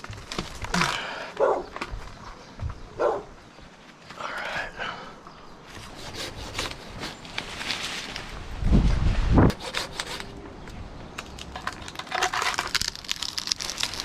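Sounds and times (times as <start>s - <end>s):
branches and leaves rustling: 0.0s - 14.0s
wood rubbing and clicking: 5.7s - 8.2s, 9.5s - 14.0s.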